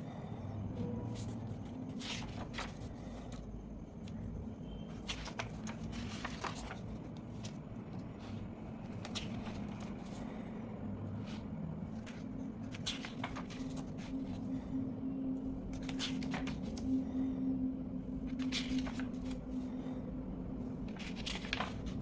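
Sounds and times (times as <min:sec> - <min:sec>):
steady low hum: 0:00.0 - 0:22.0
paper rustling: 0:01.0 - 0:10.4, 0:11.1 - 0:14.6, 0:15.4 - 0:17.0, 0:18.2 - 0:20.0, 0:20.8 - 0:22.0.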